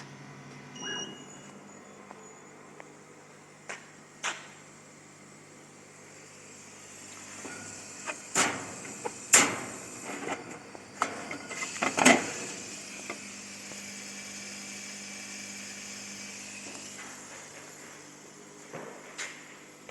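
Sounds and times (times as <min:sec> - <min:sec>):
machine and chiller humming: 0:00.0 - 0:19.9
faint held tone: 0:00.7 - 0:02.8.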